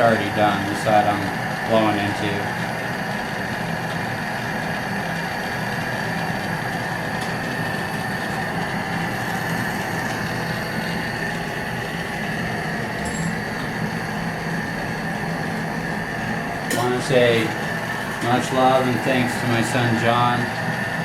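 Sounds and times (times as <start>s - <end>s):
torch flame hissing: 0.0s - 21.0s
low hum: 7.1s - 20.0s.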